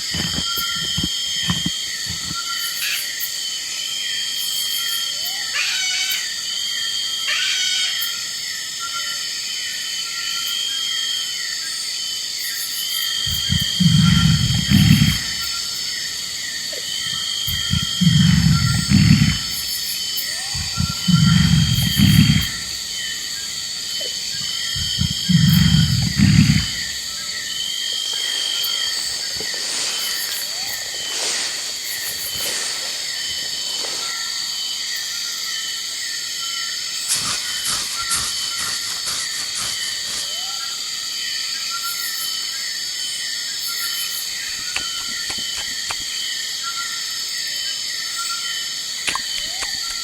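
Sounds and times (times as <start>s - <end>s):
deep rumbling animal calls: 0.0s - 2.4s, 13.2s - 34.5s, 37.1s - 40.7s.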